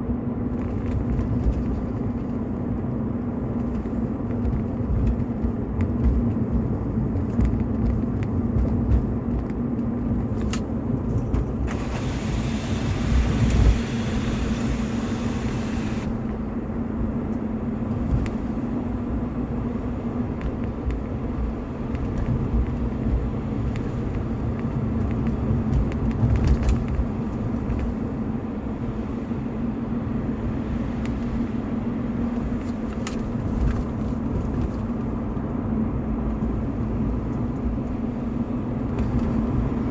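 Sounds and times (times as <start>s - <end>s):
car engine running: 0.0s - 39.9s
hiss: 11.7s - 16.1s.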